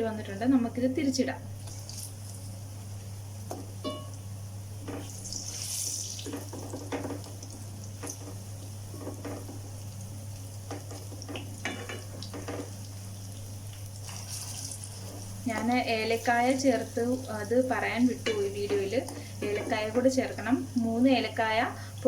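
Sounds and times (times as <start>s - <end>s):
oil sizzling: 0.0s - 22.0s
steady low hum: 0.0s - 22.0s
utensil tapping on frying pan: 3.5s - 4.2s, 6.2s - 7.4s, 10.7s - 12.7s, 18.2s - 19.8s.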